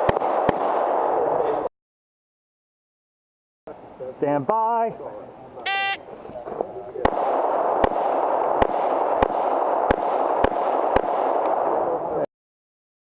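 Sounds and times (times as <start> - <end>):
pistol shots: 0.0 - 1.3, 7.0 - 11.8.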